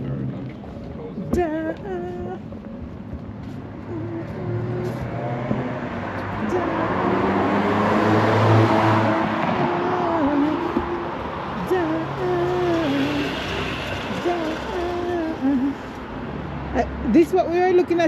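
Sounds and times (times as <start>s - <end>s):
faint voices: 0.0s - 3.0s
road vehicle passing: 0.0s - 18.0s.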